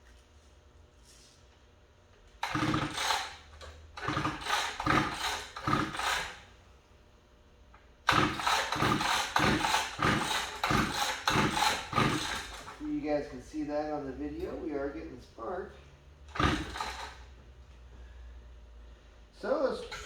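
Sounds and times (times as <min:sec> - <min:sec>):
small engine cranking with pull cord: 0:02.4 - 0:06.4, 0:08.1 - 0:12.8, 0:16.3 - 0:17.2.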